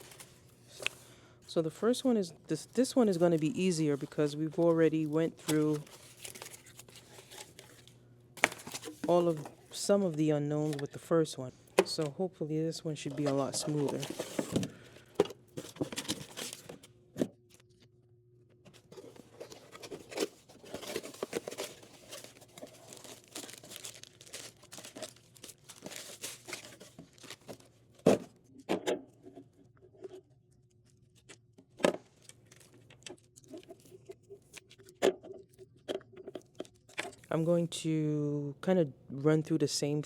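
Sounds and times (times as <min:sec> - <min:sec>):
packaging rustling and crinkling: 0:00.0 - 0:01.0, 0:02.7 - 0:10.9, 0:13.0 - 0:16.9, 0:18.7 - 0:27.8, 0:32.0 - 0:35.6.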